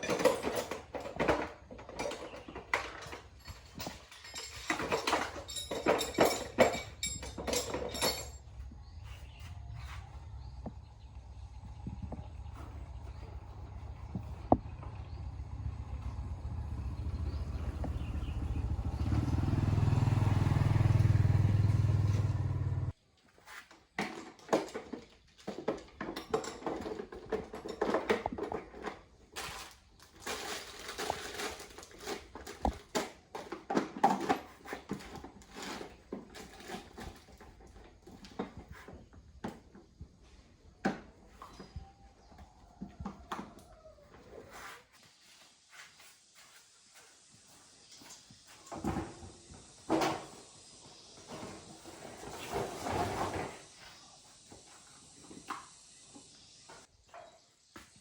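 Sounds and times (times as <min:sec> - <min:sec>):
hand tools and metal parts clinking: 0:00.0 - 0:10.4, 0:23.4 - 0:42.0.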